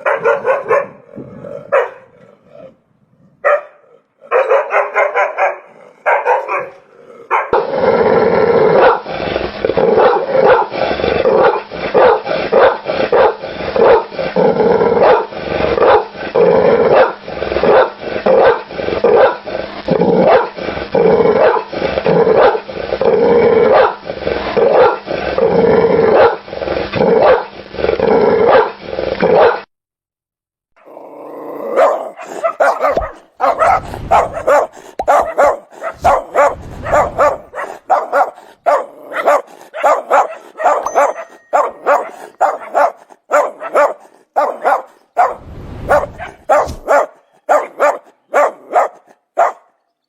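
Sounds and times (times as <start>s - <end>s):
dog barking: 0.0s - 2.2s, 3.4s - 7.6s, 8.8s - 9.0s, 10.0s - 10.7s, 11.4s - 14.1s, 15.0s - 16.1s, 16.9s - 19.4s, 21.4s - 21.7s, 22.4s - 22.6s, 23.7s - 24.0s, 24.8s - 25.0s, 26.2s - 26.4s, 28.5s - 28.7s, 29.3s - 29.6s, 31.7s - 49.8s.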